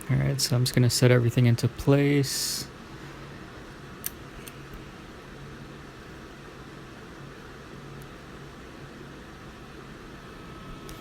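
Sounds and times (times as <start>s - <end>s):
faint low hum: 0.0s - 11.0s
hot air station blowing: 7.2s - 11.0s.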